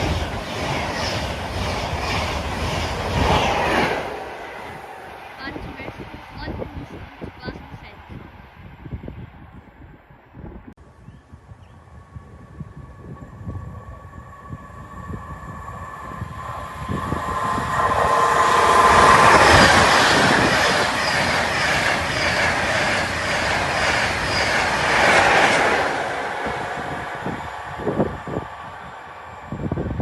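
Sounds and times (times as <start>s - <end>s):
wheels clacking over rails: 0.0s - 5.6s
train passing: 0.0s - 10.2s, 11.9s - 30.0s.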